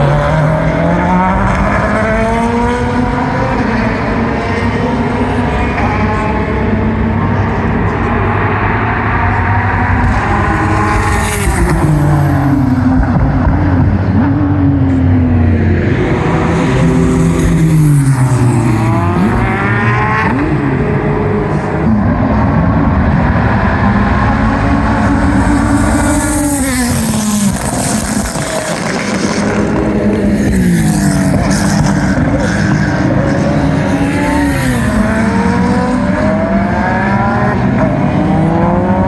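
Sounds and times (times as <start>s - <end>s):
race car engines running hard: 0.0s - 39.0s.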